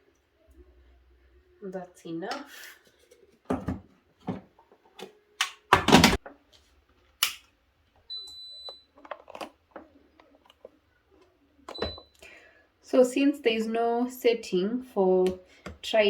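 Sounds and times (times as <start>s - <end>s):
pressure cooker beep: 8.1s - 8.9s, 11.7s - 12.2s.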